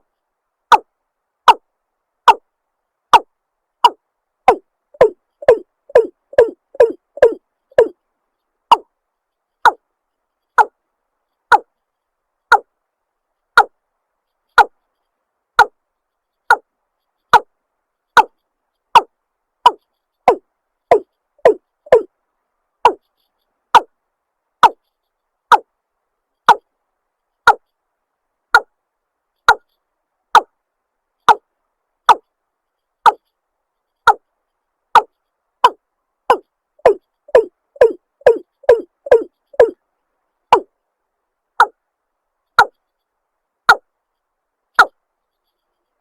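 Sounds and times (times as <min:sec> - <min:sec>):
bird calling sharp downward notes: 0:03.8 - 0:07.9, 0:20.3 - 0:22.1, 0:36.8 - 0:39.8.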